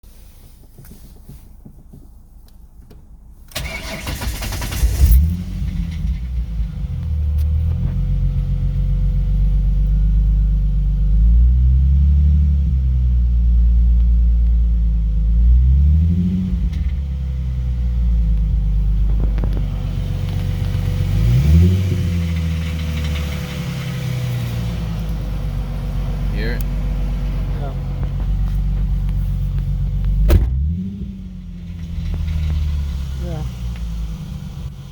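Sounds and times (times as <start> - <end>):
engine rattle: 3.0 - 11.2, 16.6 - 34.9
car engine starting and revving: 3.5 - 34.9.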